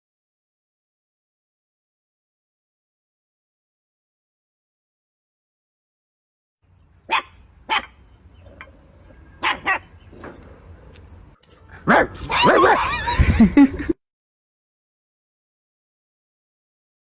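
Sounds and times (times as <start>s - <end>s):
dog barking: 7.1s - 8.7s, 9.4s - 10.0s, 11.7s - 13.2s.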